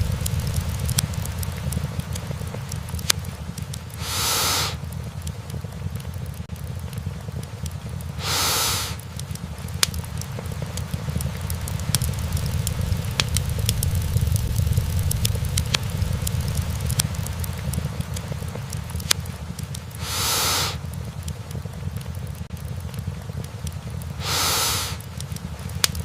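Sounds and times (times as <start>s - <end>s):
flames rumbling: 0.0s - 26.0s
logs crackling and popping: 0.0s - 26.0s
brief hiss: 4.0s - 4.8s, 8.2s - 9.0s, 20.0s - 20.8s, 24.2s - 25.0s.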